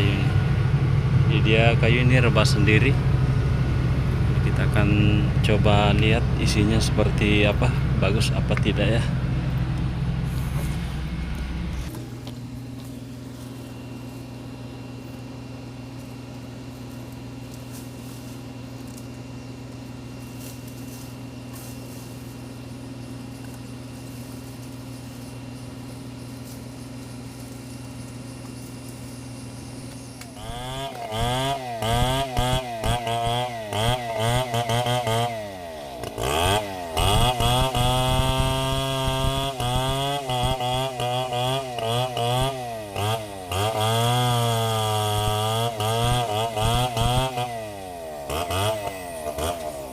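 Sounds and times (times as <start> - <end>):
chainsaw idling and revving: 0.0 - 49.9
chainsaw cutting into log: 29.9 - 49.9.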